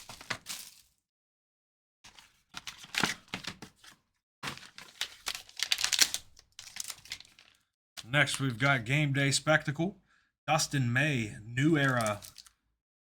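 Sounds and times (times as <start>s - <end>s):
plastic packaging crinkling and tearing: 4.4s - 7.6s, 11.8s - 12.6s.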